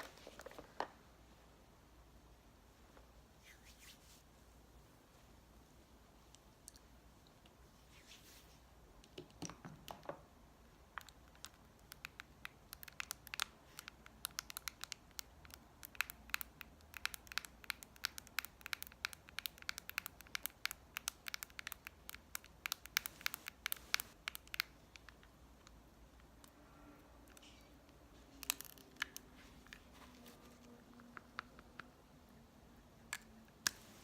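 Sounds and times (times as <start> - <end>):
soft rustle: 2.7 - 8.8, 27.4 - 31.0.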